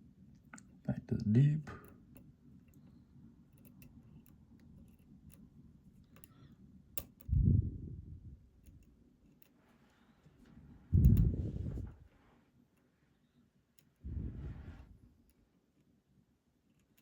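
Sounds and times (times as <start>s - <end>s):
lock pick clicking: 3.5s - 5.4s, 7.0s - 7.3s.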